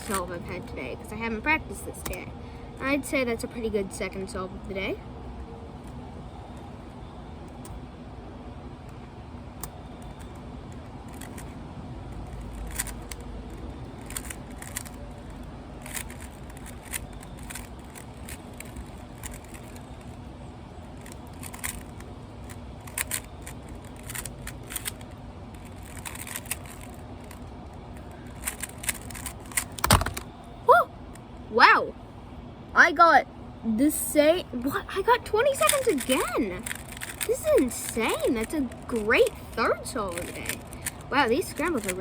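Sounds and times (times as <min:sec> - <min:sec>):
faint steady hum: 0:00.0 - 0:42.0
puzzle cube clicking: 0:09.6 - 0:20.2, 0:21.0 - 0:30.3, 0:35.2 - 0:42.0.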